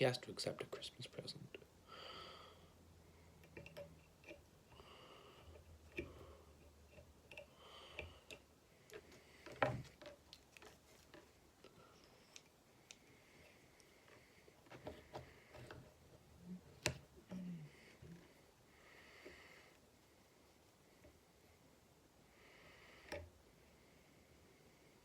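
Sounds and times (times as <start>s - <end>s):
small clicks and taps of tools: 3.4s - 4.5s, 5.4s - 15.9s, 23.0s - 23.3s.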